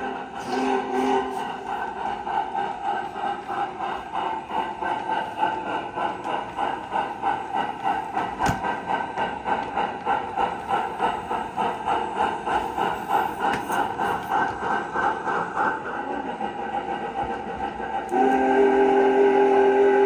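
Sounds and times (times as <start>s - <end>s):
multi-tone train whistle: 0.0s - 2.1s, 18.1s - 20.0s
model train rhythmic beat: 0.0s - 20.0s.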